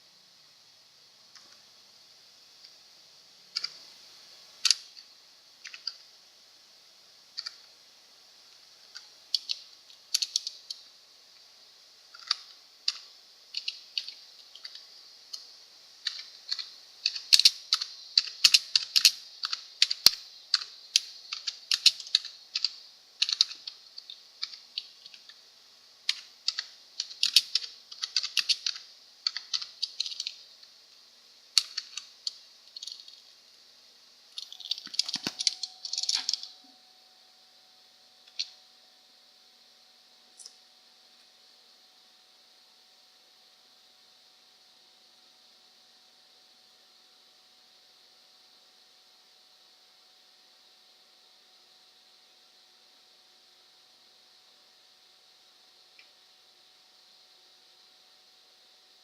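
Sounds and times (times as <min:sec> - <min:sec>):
keyboard typing clicks: 0:16.0 - 0:25.3, 0:26.1 - 0:30.4, 0:34.4 - 0:36.6.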